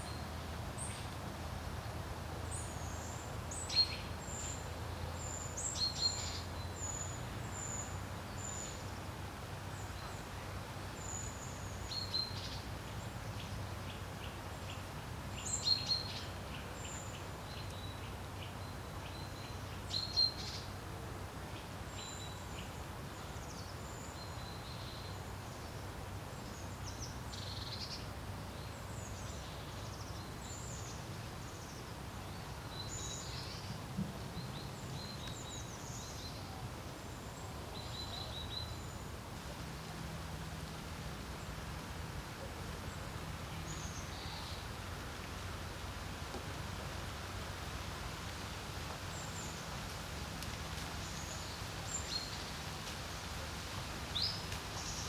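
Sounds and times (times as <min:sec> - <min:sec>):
small birds chirping: 0:02.4 - 0:08.9, 0:09.7 - 0:39.3, 0:42.4 - 0:44.8, 0:50.7 - 0:53.4, 0:54.1 - 0:55.0.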